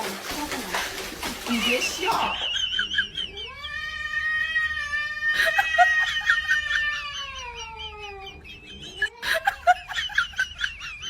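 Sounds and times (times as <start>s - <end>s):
cat yowling: 3.4s - 8.4s.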